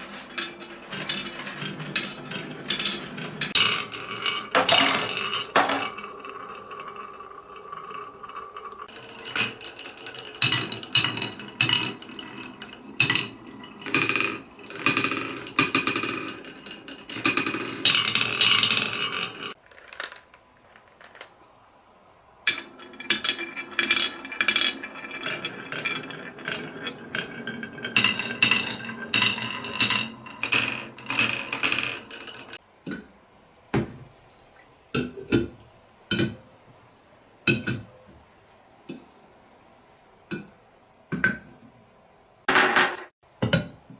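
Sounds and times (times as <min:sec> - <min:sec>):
marbles clattering down a run: 0:00.0 - 0:21.4, 0:22.5 - 0:32.6.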